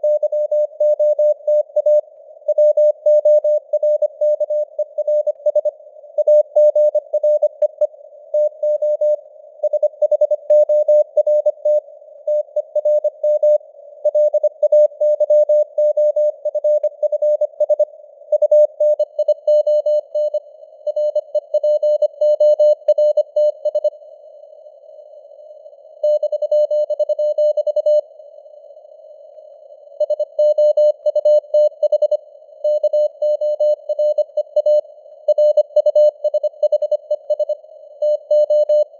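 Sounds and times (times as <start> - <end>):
morse code beeps: 26.0 - 28.0, 30.0 - 38.9.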